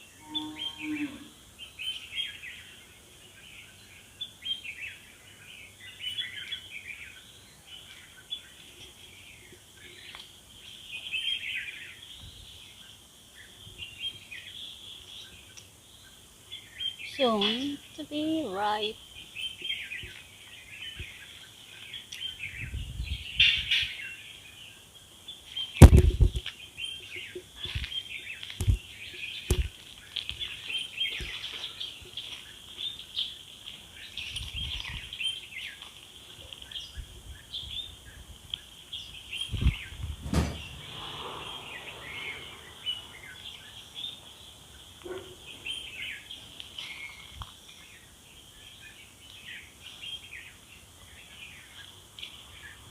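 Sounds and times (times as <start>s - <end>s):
birds chirping: 0.0s - 52.9s
dull thumps: 40.1s - 40.9s.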